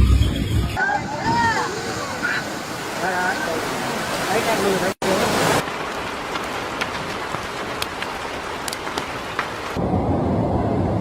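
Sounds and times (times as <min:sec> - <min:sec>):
heavy rain hissing: 0:01.1 - 0:10.5
raindrops tapping: 0:05.6 - 0:09.8
low rumbling noise: 0:09.7 - 0:11.0.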